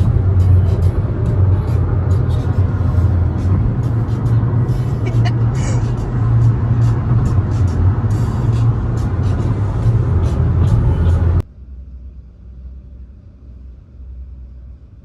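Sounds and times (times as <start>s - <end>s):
loud car noise: 0.0s - 11.4s
faint low rumble: 9.7s - 15.0s.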